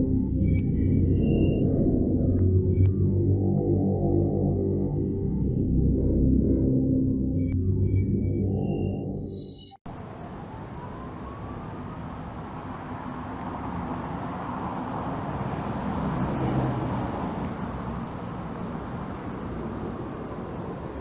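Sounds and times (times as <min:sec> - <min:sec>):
music: 0:00.0 - 0:09.8
road traffic rushing: 0:09.9 - 0:21.0.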